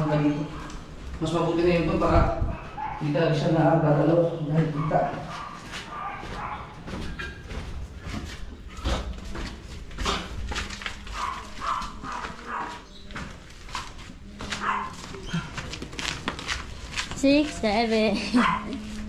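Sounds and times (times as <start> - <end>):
dog barking: 0.5 - 0.8, 2.5 - 3.2, 4.6 - 7.0, 11.1 - 12.9, 14.6 - 15.2, 18.4 - 18.8.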